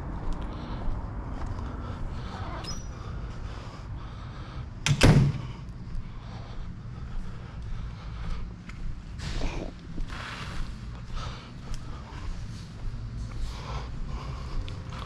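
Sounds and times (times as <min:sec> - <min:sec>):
steady low rumble: 0:00.0 - 0:15.0
door shutting thud: 0:04.8 - 0:05.5.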